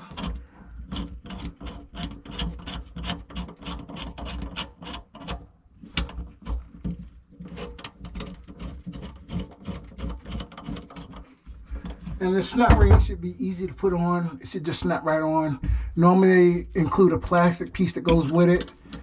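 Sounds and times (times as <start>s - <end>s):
screwdriver clicking and scraping: 0.0s - 12.2s, 17.9s - 19.0s.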